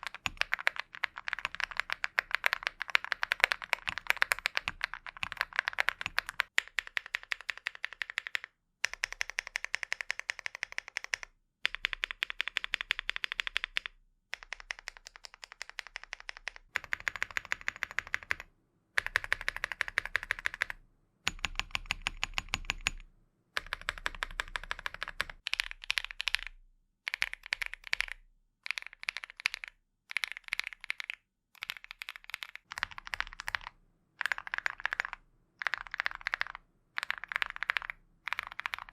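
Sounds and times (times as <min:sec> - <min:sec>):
mechanical keyboard typing: 0:00.0 - 0:23.0, 0:23.6 - 0:38.9.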